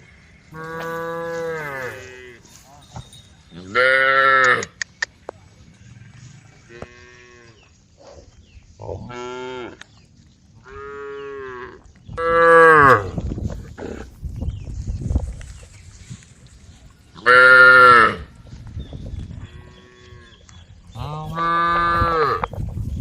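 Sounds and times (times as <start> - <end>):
cows mooing: 0.5 - 2.5
sharp clicks: 4.4 - 5.4.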